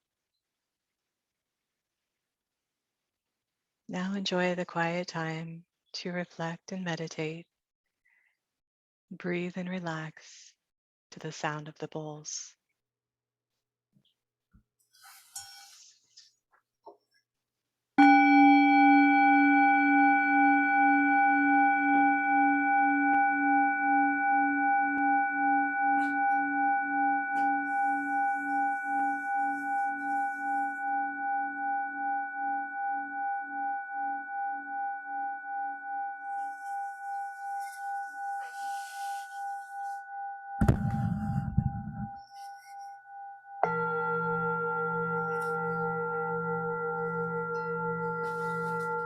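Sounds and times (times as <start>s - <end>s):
singing bowl ringing: 18.0s - 49.0s.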